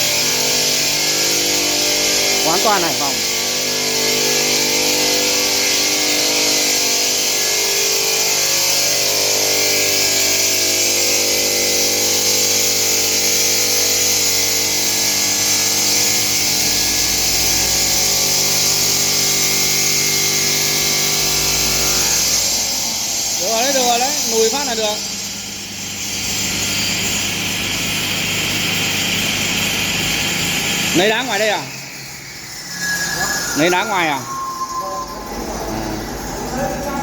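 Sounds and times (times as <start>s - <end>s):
stone-working machine grinding hiss: 0.0s - 37.0s
deep rumble: 32.9s - 37.0s.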